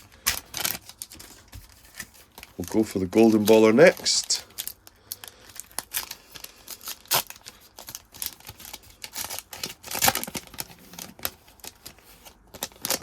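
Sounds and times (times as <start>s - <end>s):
foil wrapper tearing and crinkling: 0.0s - 13.0s.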